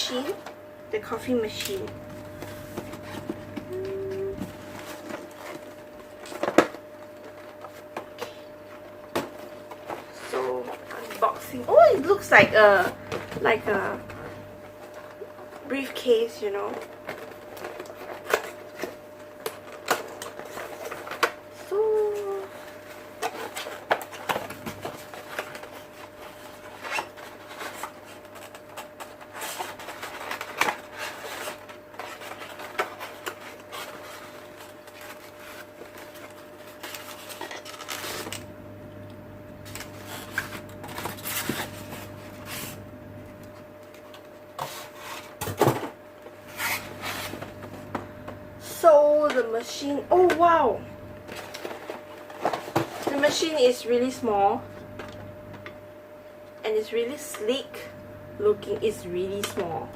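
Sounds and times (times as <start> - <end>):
faint hum: 0.0 - 59.9
packaging rubbing and clicking: 16.6 - 38.5.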